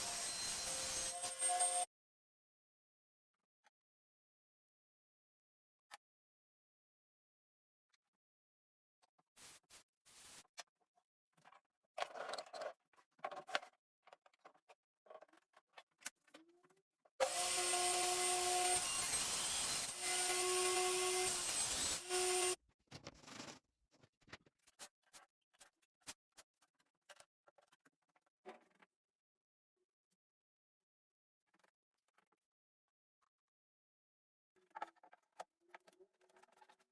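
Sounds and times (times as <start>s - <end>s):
power tool whining: 17.2s - 22.6s.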